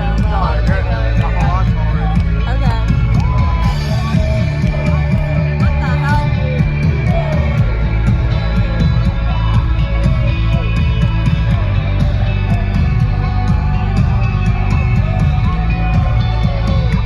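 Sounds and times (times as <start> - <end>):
live rock band: 0.0 - 17.0.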